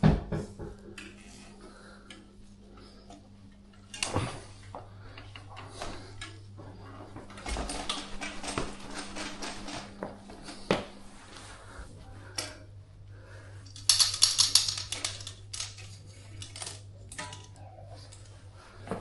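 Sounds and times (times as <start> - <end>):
steady low hum: 0.0 - 19.0
metal parts clicking and rattling: 13.6 - 18.3.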